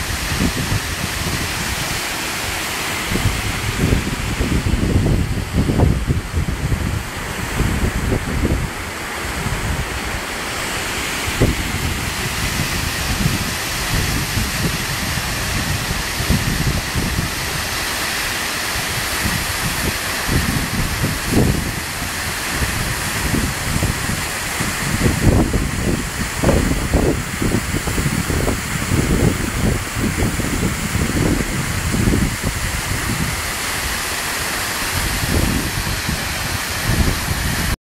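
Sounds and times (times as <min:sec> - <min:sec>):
wind buffeting microphone: 0:00.0 - 0:18.1, 0:18.7 - 0:37.8
waterfall rushing: 0:00.0 - 0:37.8.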